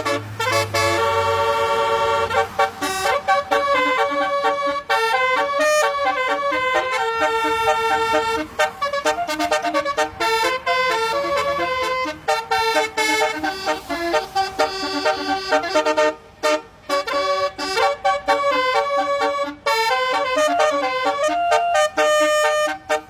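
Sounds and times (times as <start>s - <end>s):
bus horn playing a fast melody: 0.0s - 23.0s.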